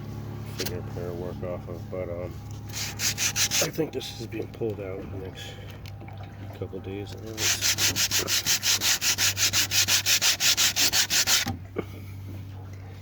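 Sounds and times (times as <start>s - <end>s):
sandpaper rubbing on boat hull: 2.6s - 3.8s, 7.3s - 11.5s.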